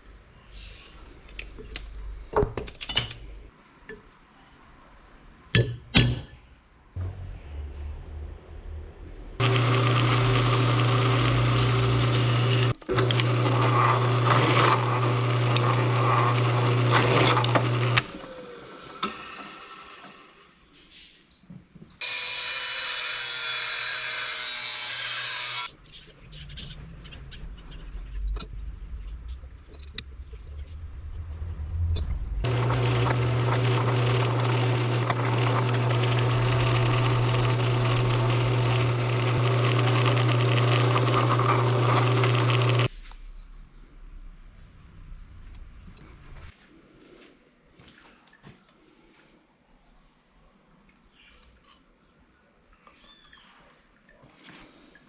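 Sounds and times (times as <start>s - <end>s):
power tool grinding hum: 9.4s - 20.5s, 22.0s - 25.7s, 32.4s - 42.9s.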